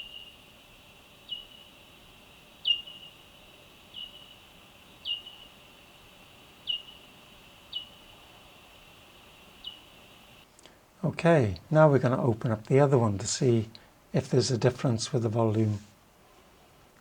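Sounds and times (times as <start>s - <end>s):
bat echolocation chirps: 0.0s - 10.5s
faint hiss: 0.0s - 17.0s.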